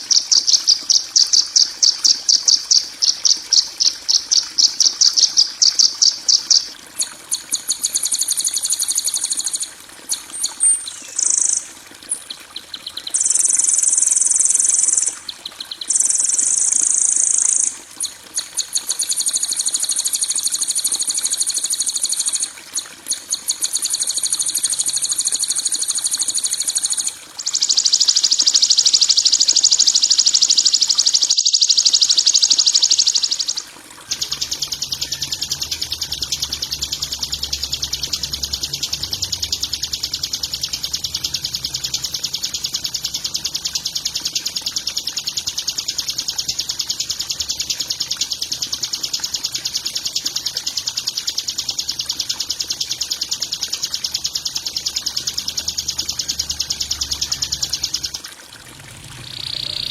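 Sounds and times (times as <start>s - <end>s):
fast pulsed bird chirping: 0.0s - 58.3s, 59.2s - 59.9s
buzzy bird trills and buzzes: 7.3s - 22.5s, 23.6s - 44.5s, 59.2s - 59.9s.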